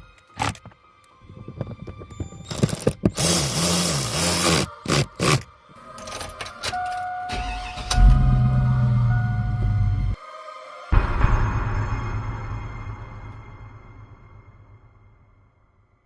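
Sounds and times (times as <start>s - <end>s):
music with sharp hits: 7.5s - 10.2s, 10.9s - 15.7s.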